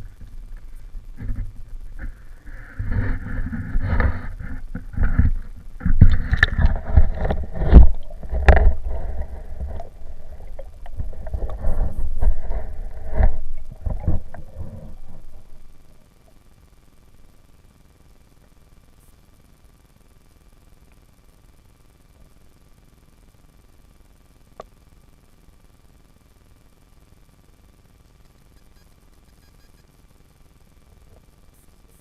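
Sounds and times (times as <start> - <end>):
water sloshing and splashing: 2.8 - 16.0.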